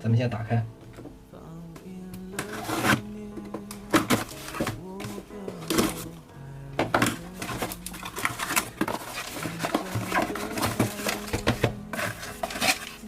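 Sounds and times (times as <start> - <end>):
quiet background music: 0.0 - 13.0
packaging clicks and rustles: 2.2 - 6.2, 6.8 - 13.0.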